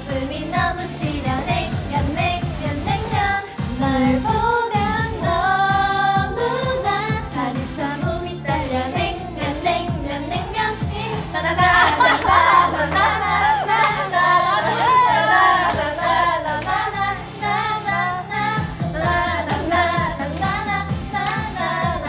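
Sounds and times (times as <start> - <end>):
upbeat pop song with singing: 0.0 - 22.0.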